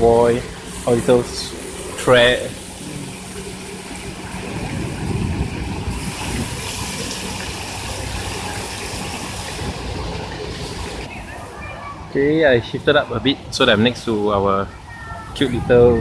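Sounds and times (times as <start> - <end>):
water sprays hissing: 0.0 - 11.2.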